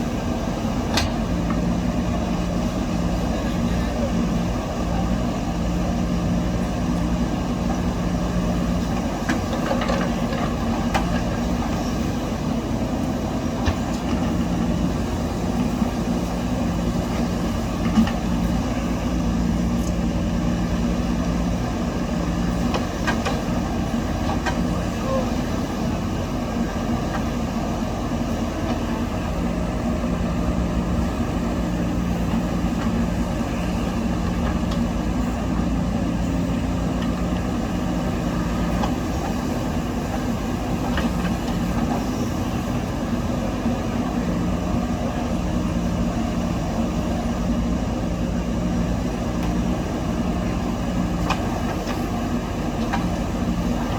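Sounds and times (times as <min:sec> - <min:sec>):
diesel engine of backhoe loader: 0:00.0 - 0:53.9.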